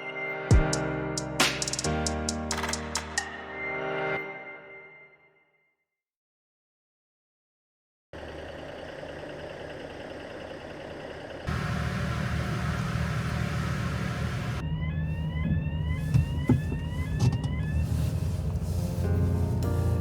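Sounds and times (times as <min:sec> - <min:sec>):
vehicle engine rumble: 0:08.2 - 0:20.0.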